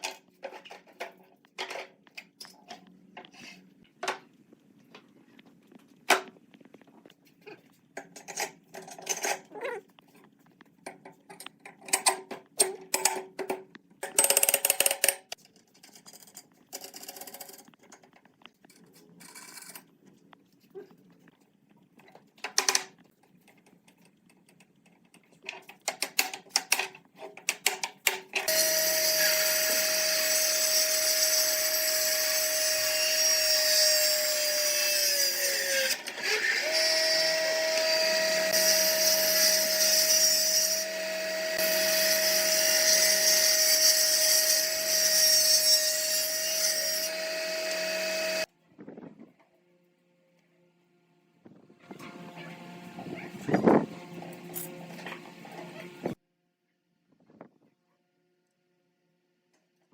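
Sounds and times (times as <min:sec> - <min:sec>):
power tool running: 0:28.5 - 0:48.5.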